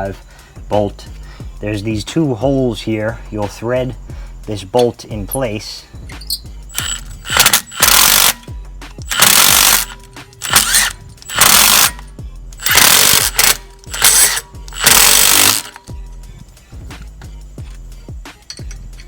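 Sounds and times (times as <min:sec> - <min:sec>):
impact wrench bursts: 0:06.2 - 0:15.9.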